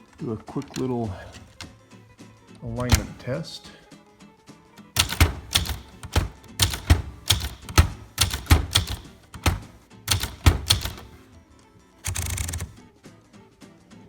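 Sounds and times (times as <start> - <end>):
manual typewriter keystrokes: 2.8 - 3.2, 5.0 - 11.2, 12.0 - 12.8.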